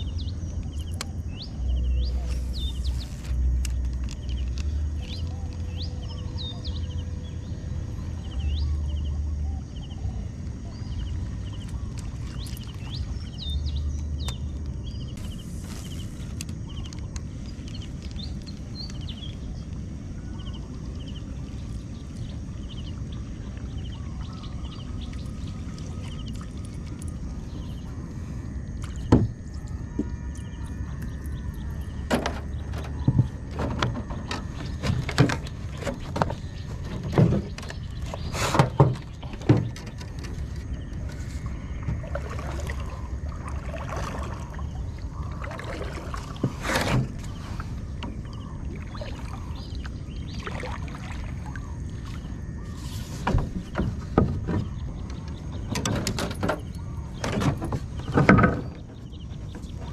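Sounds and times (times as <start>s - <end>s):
birds chirping: 0.0s - 59.9s
steady low rumble: 0.0s - 59.9s
paddle boat knocks and bumps: 28.8s - 30.2s, 31.9s - 49.2s, 53.0s - 59.9s.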